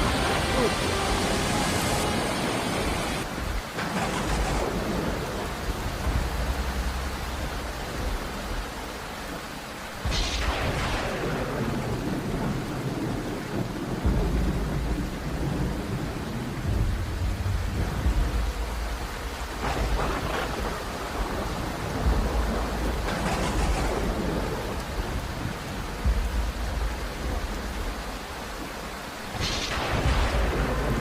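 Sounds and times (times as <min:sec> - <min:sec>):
thunder rumbling: 0:00.0 - 0:08.9, 0:09.9 - 0:31.0
heavy rain falling: 0:00.0 - 0:31.0
thunder crack: 0:10.0 - 0:18.6, 0:19.3 - 0:27.5, 0:29.3 - 0:31.0.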